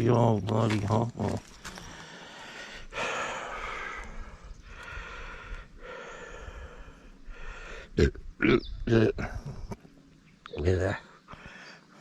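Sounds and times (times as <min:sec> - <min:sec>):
person breathing heavily: 0:01.6 - 0:08.0, 0:11.3 - 0:12.0.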